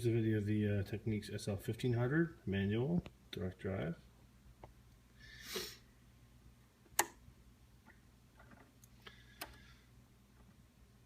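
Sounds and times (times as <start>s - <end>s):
low steady hum: 0.0s - 11.0s
short sniff: 5.2s - 5.9s
sharp click: 6.9s - 7.2s.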